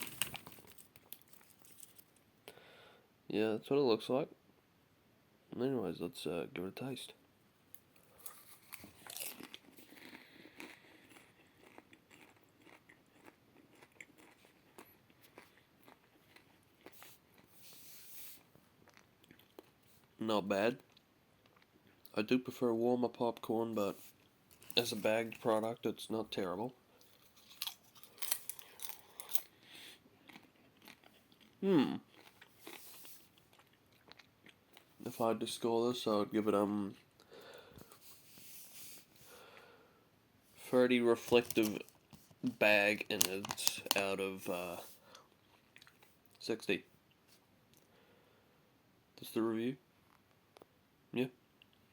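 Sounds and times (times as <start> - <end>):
person crunching popcorn: 0.0 - 2.2, 8.0 - 17.7, 24.0 - 25.8, 27.0 - 35.0, 41.2 - 46.1.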